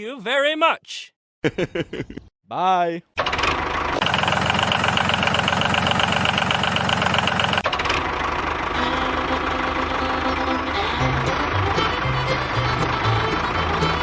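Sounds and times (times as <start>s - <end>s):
engine running with knock: 3.2s - 14.0s.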